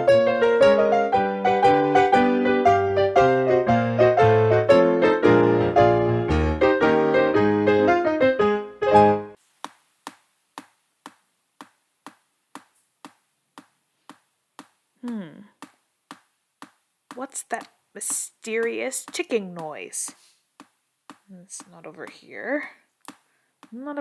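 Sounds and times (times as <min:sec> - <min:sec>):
clock ticking: 0:11.6 - 0:22.3.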